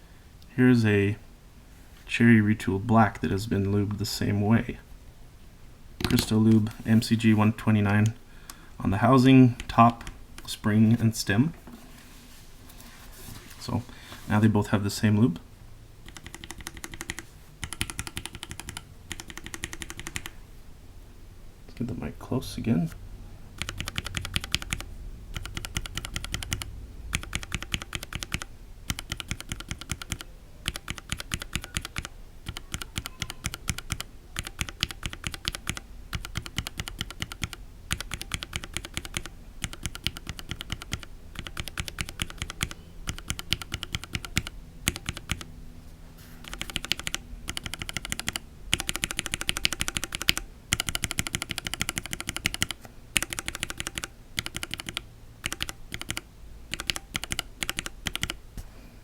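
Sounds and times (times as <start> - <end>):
keyboard switches clacking: 46.5 - 58.4.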